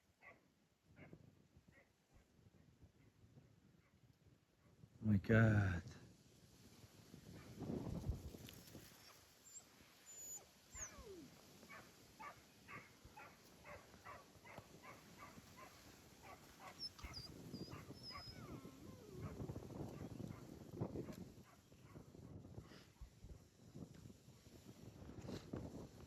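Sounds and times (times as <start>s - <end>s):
dog whining: 9.0s - 11.4s, 15.2s - 20.4s.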